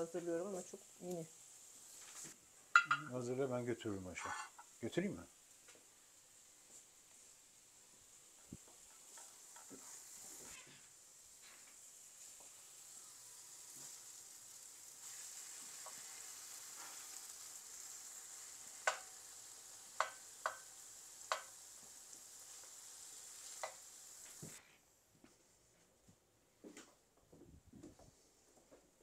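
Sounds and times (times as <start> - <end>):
vegetables sizzling in a frying pan: 0.0 - 24.6.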